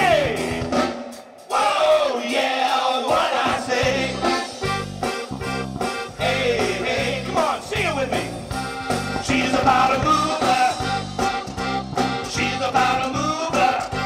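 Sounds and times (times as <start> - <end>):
band playing upbeat song: 0.0 - 14.0.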